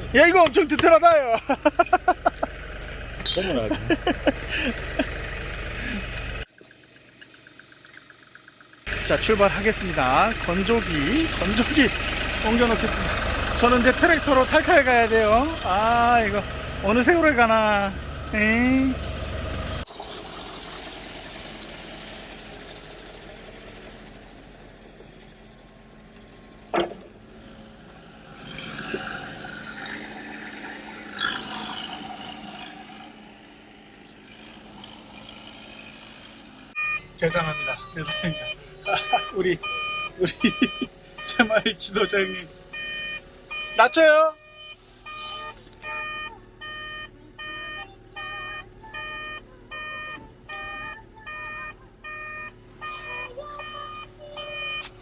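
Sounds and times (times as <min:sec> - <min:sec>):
tractor engine running: 0:00.0 - 0:55.0
electronic warning alarm beeping: 0:36.8 - 0:54.8.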